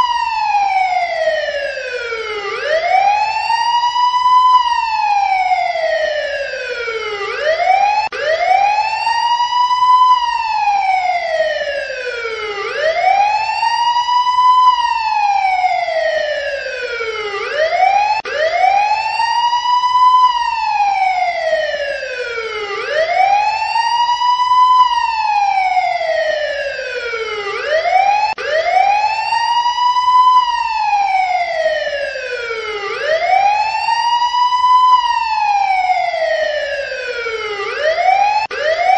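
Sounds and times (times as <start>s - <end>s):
siren wailing: 0.0s - 38.9s.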